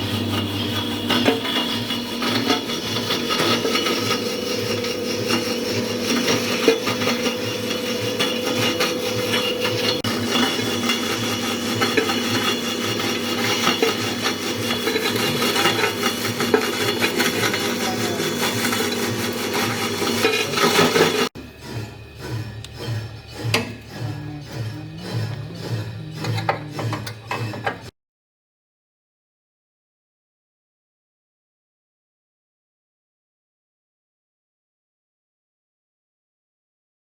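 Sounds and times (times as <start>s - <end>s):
grinding machine running: 0.0s - 27.9s.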